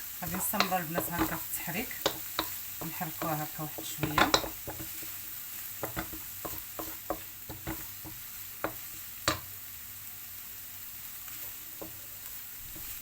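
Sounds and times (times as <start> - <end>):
onion sizzling in oil: 0.0 - 13.0
utensil tapping against pan: 0.2 - 5.2, 5.8 - 9.5.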